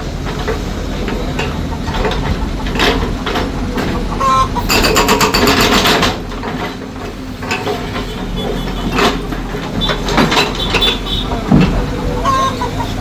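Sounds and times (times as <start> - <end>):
diesel engine running: 0.0 - 13.0
knocks: 7.6 - 12.6.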